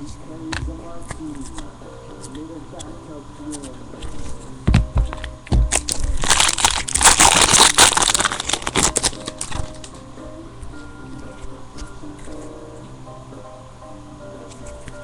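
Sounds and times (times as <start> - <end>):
low thumps: 4.7 - 6.3
foil wrapper crinkling: 5.1 - 10.0.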